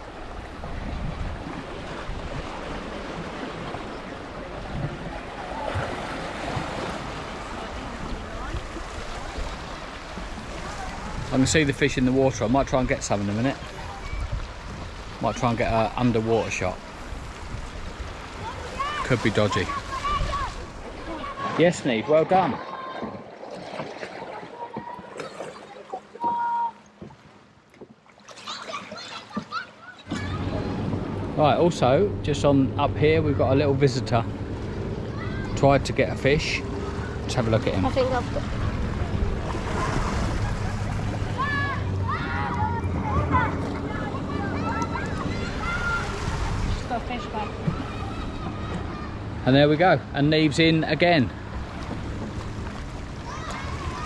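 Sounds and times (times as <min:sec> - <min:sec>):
wind rumbling on microphone: 0:00.0 - 0:11.4, 0:16.7 - 0:19.0, 0:37.9 - 0:49.4
sea water washing against rocks: 0:00.0 - 0:26.9, 0:35.9 - 0:49.3, 0:51.4 - 0:54.0.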